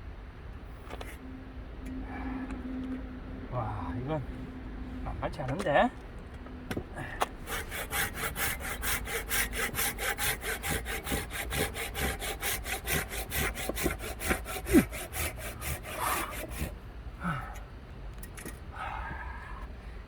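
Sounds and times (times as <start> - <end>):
hand saw cutting log: 6.7 - 16.8.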